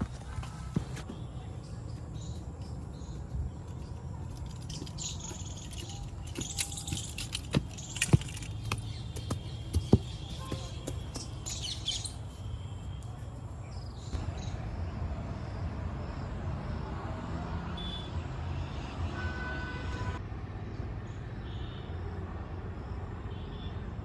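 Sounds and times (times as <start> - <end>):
birds chirping faintly: 0.0 - 14.2.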